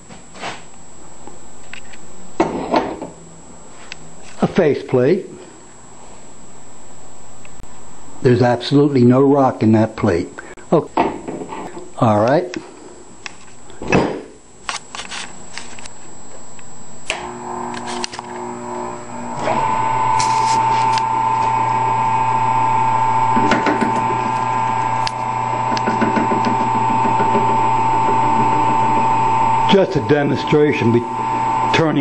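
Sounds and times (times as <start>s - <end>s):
lathe motor whining: 17.0s - 32.0s.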